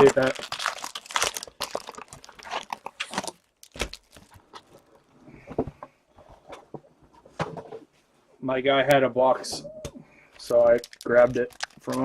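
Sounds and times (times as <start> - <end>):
wrapper rustling: 0.0 - 5.1, 10.4 - 12.0.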